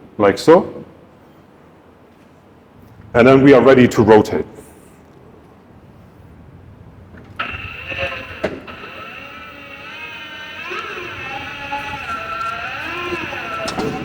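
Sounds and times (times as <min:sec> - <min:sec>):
tyre changer turntable rotating: 0:07.1 - 0:14.0
wavering tyre squeal: 0:07.4 - 0:14.0.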